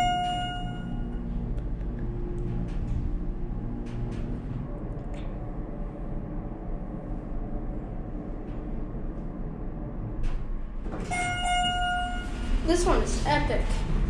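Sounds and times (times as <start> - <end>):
electronic chime tone: 0.0 - 1.1
hydraulic pump rumble and hum: 0.0 - 14.0.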